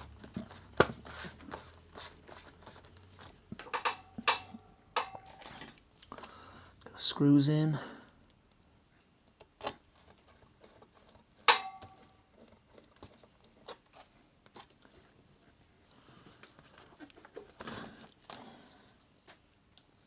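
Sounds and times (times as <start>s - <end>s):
soft rustle: 12.4s - 20.0s.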